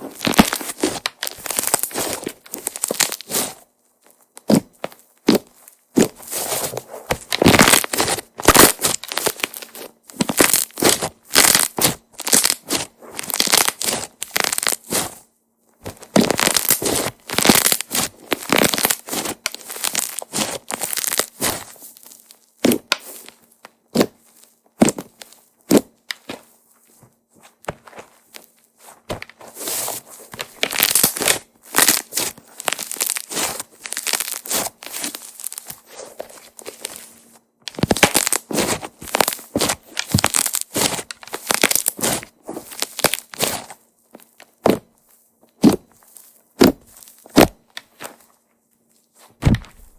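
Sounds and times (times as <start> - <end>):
slime squeezed crackling and popping: 0.1 - 3.6, 7.2 - 15.1, 16.0 - 23.4, 30.4 - 37.0, 37.7 - 44.8.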